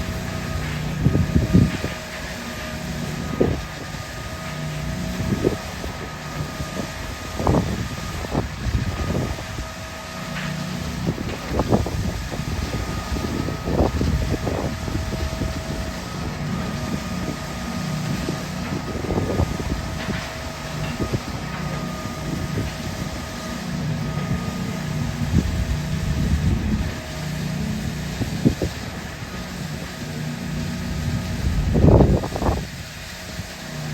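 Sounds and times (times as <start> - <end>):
faint steady whine: 0.0 - 33.9
heavy diesel machinery running: 0.0 - 33.9.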